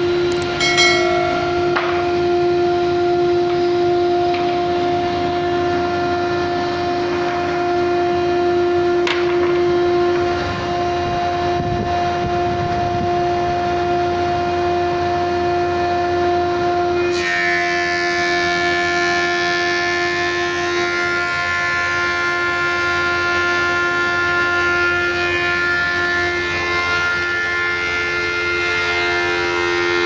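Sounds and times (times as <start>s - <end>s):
higher whine and hiss: 0.0s - 4.0s
planer machine whine: 0.0s - 30.0s.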